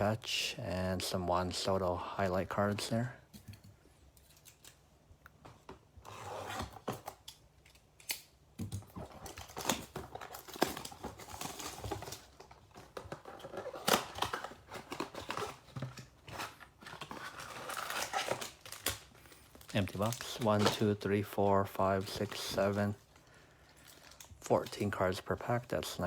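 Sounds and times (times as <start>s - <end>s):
cardboard and wrapping crinkling: 8.8s - 26.0s.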